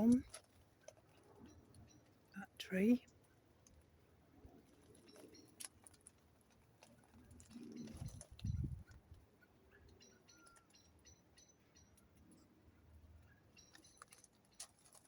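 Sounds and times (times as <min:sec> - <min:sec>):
small bird high calls: 0:07.6 - 0:12.2.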